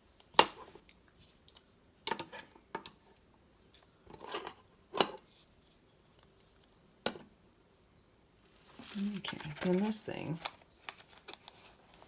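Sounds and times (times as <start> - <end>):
scratchy rustle of packaging: 8.4 - 12.0.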